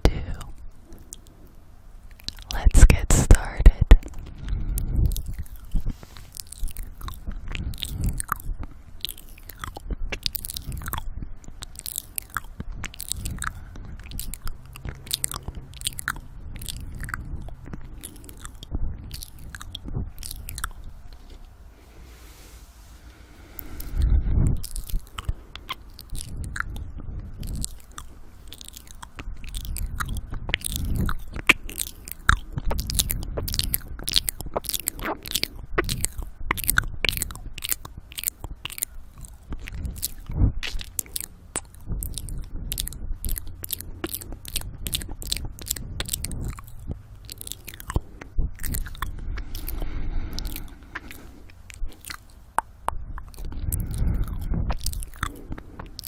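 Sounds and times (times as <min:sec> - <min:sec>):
wet lip and tongue clicks: 0:00.0 - 0:21.6, 0:23.4 - 0:56.0
heavy breathing on microphone: 0:12.6 - 0:28.5, 0:45.6 - 0:56.0.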